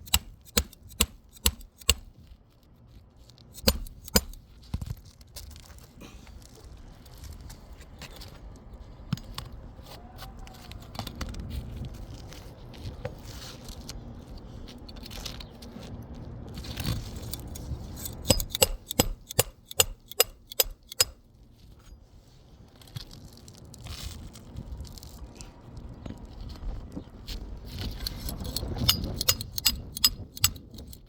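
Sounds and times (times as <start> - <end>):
hammer striking nails: 0.0 - 2.1, 3.6 - 4.4, 17.4 - 21.2, 28.2 - 31.0
small metallic clinks: 3.6 - 4.4, 17.3 - 21.2, 28.0 - 31.0
handling noise: 17.2 - 21.2.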